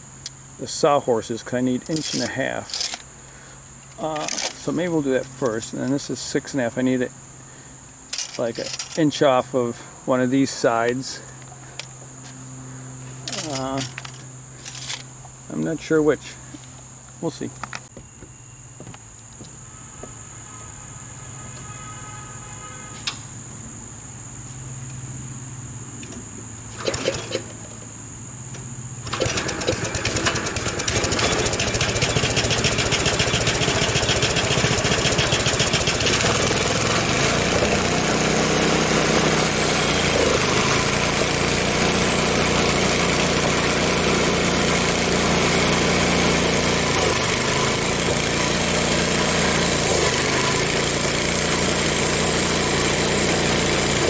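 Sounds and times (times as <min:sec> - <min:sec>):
insects buzzing: 0:00.0 - 0:54.0
click: 0:23.0 - 0:23.2
small gasoline engine running: 0:26.7 - 0:27.5, 0:29.0 - 0:54.0.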